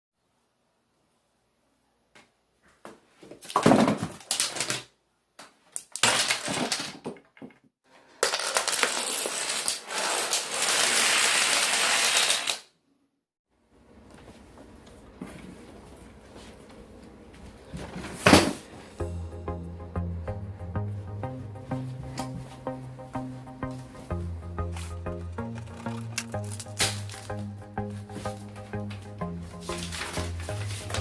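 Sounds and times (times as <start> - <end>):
plastic dominoes clattering: 8.2 - 12.7.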